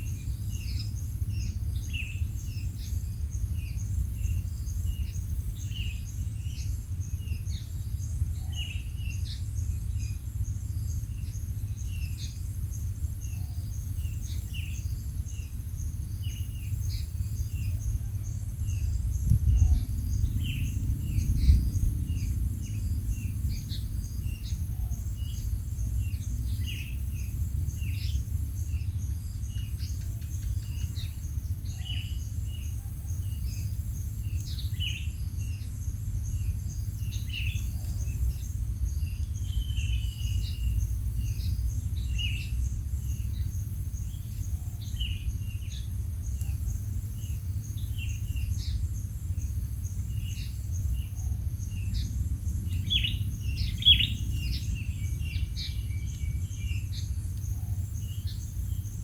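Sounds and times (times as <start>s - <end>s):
low rumble: 0.0s - 59.0s
quail chirping: 52.6s - 58.8s.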